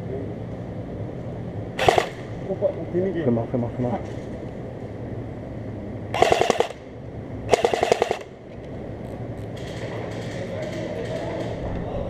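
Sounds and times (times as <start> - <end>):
airsoft gun automatic bursts: 1.8 - 2.4, 6.1 - 6.9, 7.5 - 8.3.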